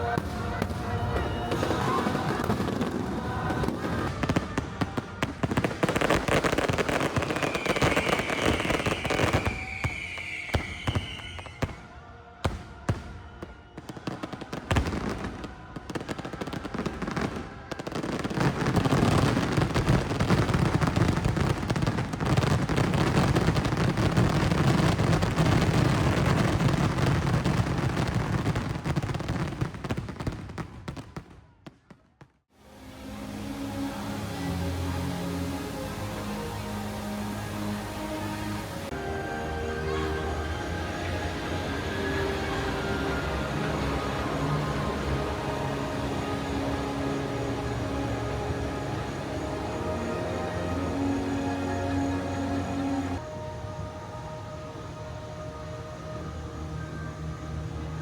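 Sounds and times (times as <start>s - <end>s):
firework whistle: 0.0s - 31.2s
fireworks bangs and crackling: 0.0s - 32.4s.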